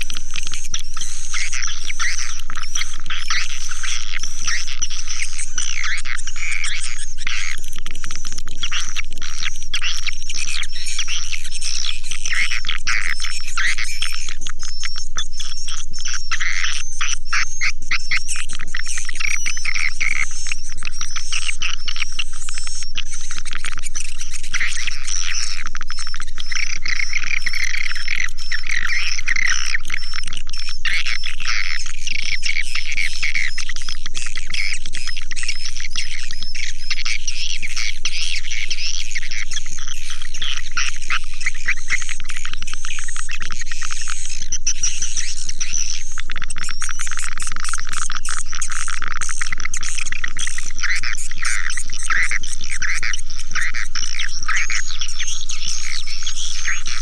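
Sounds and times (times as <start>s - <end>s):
chorus of bird chirps and trills: 0.0s - 57.0s.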